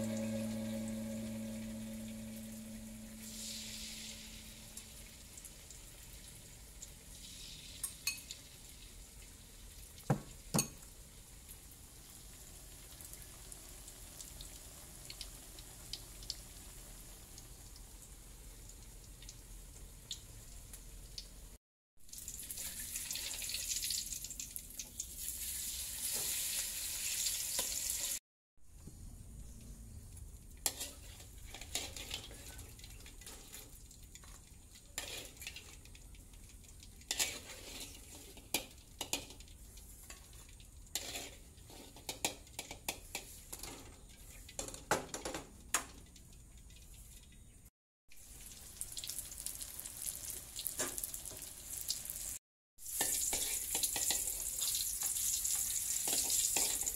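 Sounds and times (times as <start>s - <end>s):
food sizzling in a pan: 0.0s - 21.4s, 22.1s - 28.2s, 30.6s - 44.8s, 48.1s - 56.9s
utensil clinking and scraping pan: 30.7s - 32.6s, 35.0s - 35.8s, 37.1s - 39.4s, 41.0s - 44.0s, 53.0s - 54.4s, 56.0s - 56.9s.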